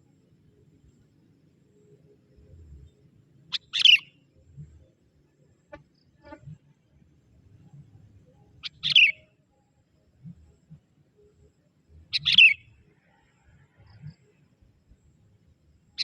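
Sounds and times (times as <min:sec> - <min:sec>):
bulbul chirping calls: 0:03.5 - 0:04.2, 0:08.6 - 0:09.2, 0:12.1 - 0:12.7.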